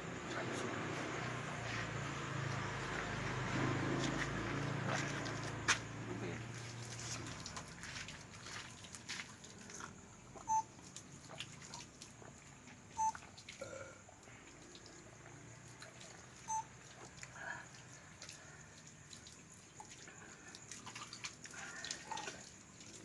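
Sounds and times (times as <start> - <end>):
short electronic beeps: 10.5 - 10.7, 13.0 - 13.2, 16.5 - 16.7.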